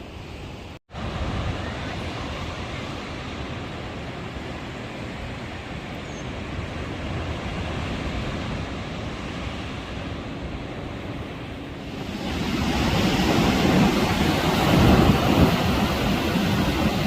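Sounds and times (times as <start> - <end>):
ocean surf breaking: 6.5 - 17.0.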